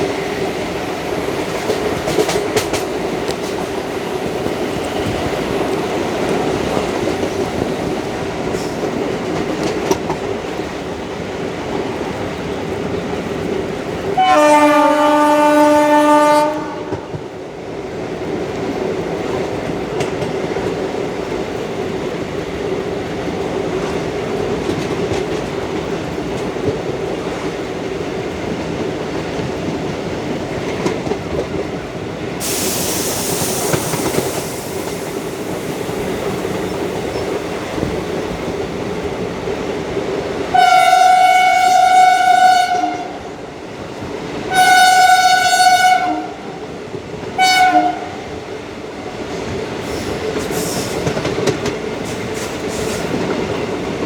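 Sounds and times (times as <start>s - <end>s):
train clickety-clack on rails: 0.0s - 54.0s
locomotive air horn blasts: 14.2s - 17.1s, 40.5s - 43.2s, 44.5s - 46.4s, 47.4s - 48.2s
brief air hiss: 32.4s - 37.5s, 49.8s - 51.2s, 52.0s - 53.2s.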